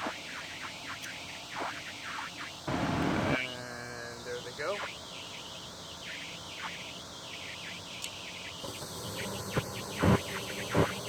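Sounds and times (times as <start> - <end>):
gas furnace hiss and whir: 8.5 - 11.0.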